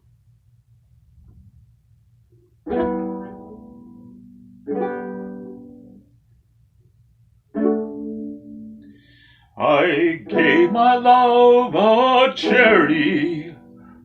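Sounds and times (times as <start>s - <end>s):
gittern strummed chords ringing: 2.7s - 6.1s, 7.5s - 14.0s.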